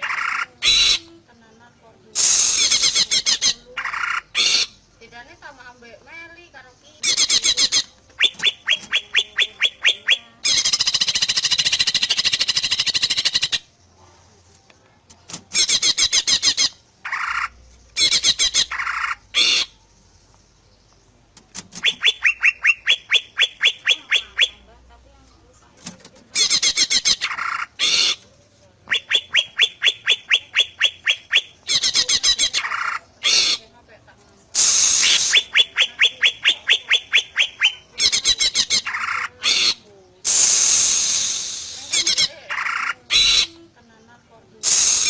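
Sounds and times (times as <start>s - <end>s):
bird singing: 0.0s - 13.8s, 15.5s - 24.8s, 26.3s - 33.9s, 34.5s - 45.0s
bird singing whistles and trill: 7.1s - 13.6s.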